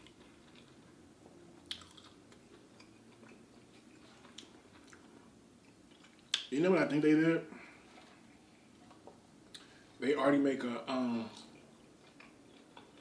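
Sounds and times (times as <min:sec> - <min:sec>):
close-up chewing: 0:00.0 - 0:06.5, 0:11.4 - 0:13.0.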